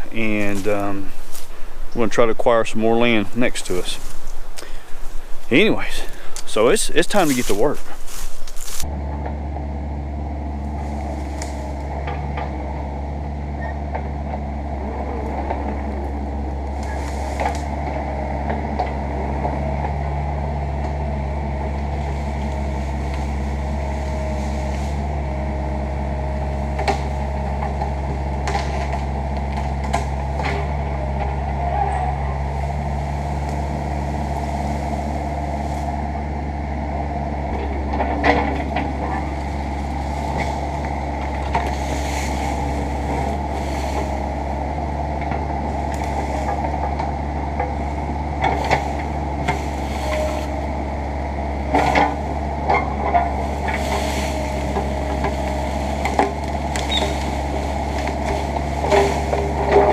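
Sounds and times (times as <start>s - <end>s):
diesel engine running: 0.0s - 59.9s
sharp cracks and knocks: 26.7s - 30.6s, 53.1s - 59.9s.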